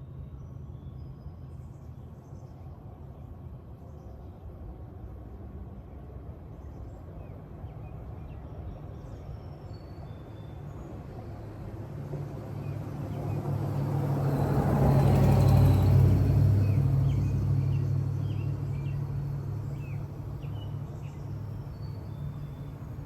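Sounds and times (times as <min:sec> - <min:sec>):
vehicle passing: 0:12.5 - 0:23.0
birds chirping: 0:16.6 - 0:23.0.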